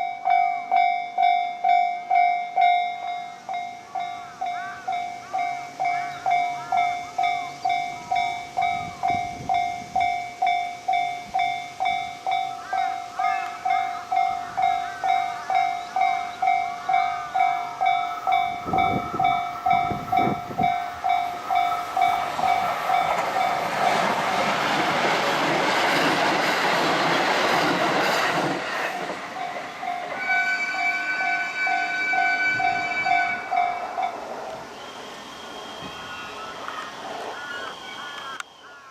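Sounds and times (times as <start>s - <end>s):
level crossing bell ringing: 0.0s - 24.1s, 29.3s - 34.2s
train wheels on rails: 0.0s - 38.5s.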